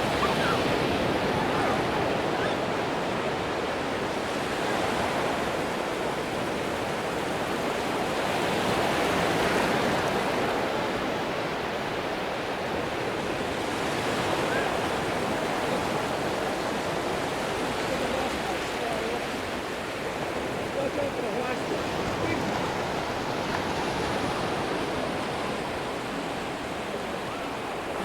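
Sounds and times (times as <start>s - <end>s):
waves breaking on beach: 0.0s - 28.0s.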